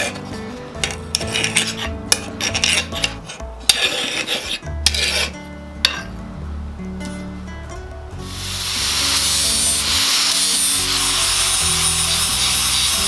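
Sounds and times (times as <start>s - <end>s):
background music: 0.0s - 13.0s
hand file rasping on steel blade: 0.8s - 6.0s, 8.3s - 13.0s.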